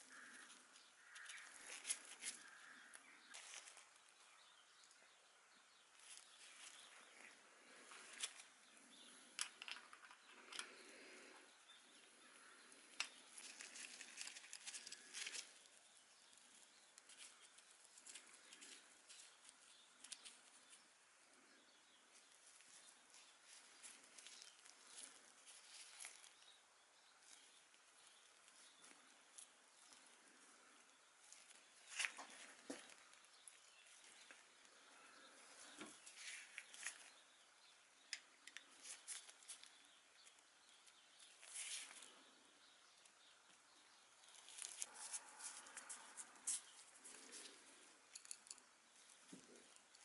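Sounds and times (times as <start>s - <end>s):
light clicks and rustling: 6.0s - 10.9s.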